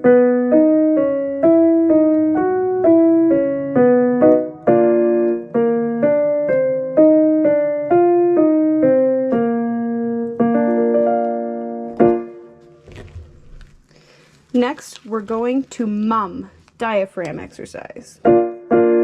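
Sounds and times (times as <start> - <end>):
piano notes and chords: 0.0 - 14.2, 18.2 - 19.0.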